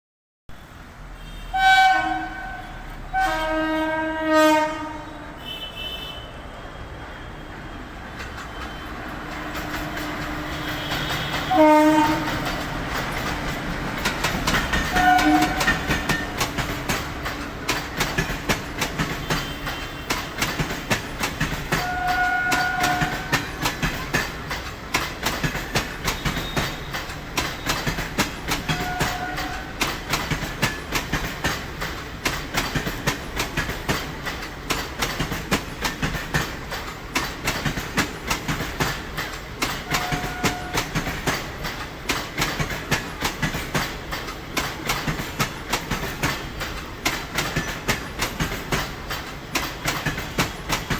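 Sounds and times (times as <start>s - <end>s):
train horn: 1.1s - 6.5s, 8.6s - 12.7s, 14.7s - 16.7s, 19.2s - 20.4s, 21.7s - 23.8s, 26.1s - 27.1s, 28.6s - 30.2s, 39.8s - 41.2s
train wheels clattering: 8.0s - 50.9s.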